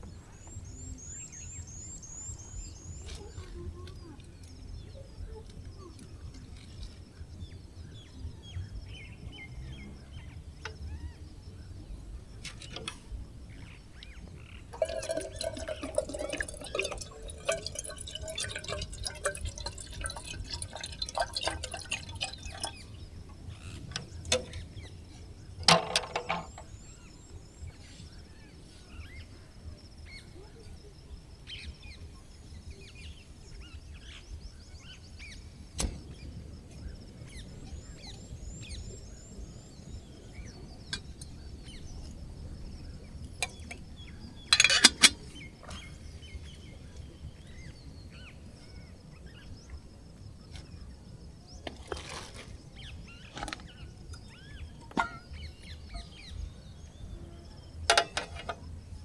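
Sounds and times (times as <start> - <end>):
liquid pouring into container: 14.7 - 23.0.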